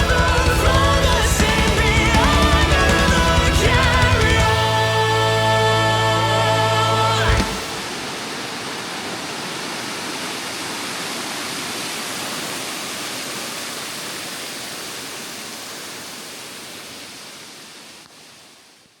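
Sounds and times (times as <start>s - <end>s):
waterfall rushing: 0.0s - 18.4s.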